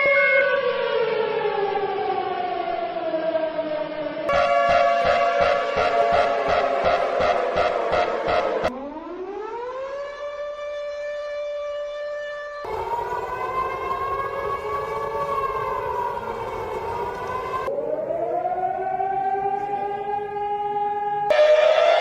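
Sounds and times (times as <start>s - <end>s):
held siren tone: 0.0s - 22.0s
rough siren swaying in pitch: 1.8s - 11.6s, 12.6s - 22.0s
siren winding up in pitch: 4.2s - 10.6s, 21.3s - 22.0s.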